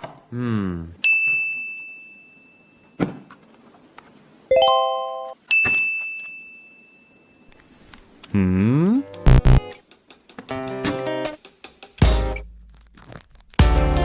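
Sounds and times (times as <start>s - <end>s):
bell-like ding: 4.6s - 7.4s.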